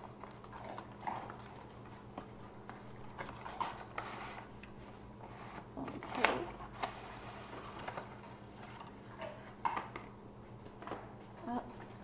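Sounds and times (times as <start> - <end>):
cardboard and plastic rustling: 3.1 - 10.0.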